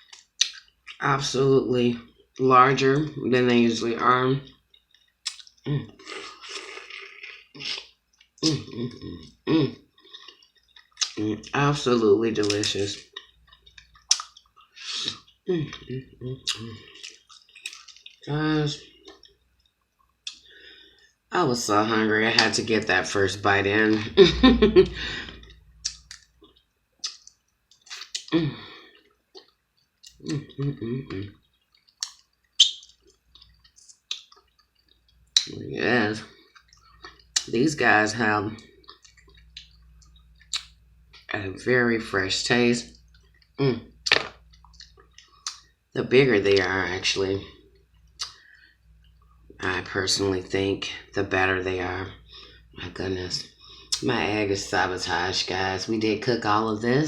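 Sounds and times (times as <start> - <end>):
wet chewing and smacking: 0.0 - 1.0, 4.4 - 11.6, 12.4 - 20.5, 25.4 - 35.6, 36.3 - 37.5, 38.6 - 41.3, 42.9 - 45.8, 47.7 - 49.6
person humming mmm: 8.4 - 9.8, 14.9 - 16.9, 28.2 - 28.8.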